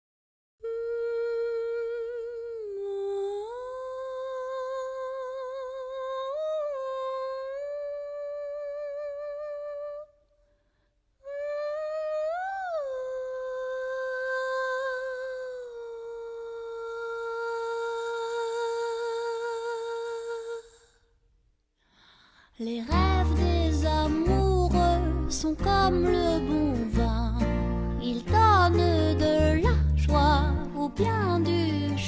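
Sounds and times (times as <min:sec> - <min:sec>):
person humming: 0:00.6 - 0:06.6, 0:22.7 - 0:32.0.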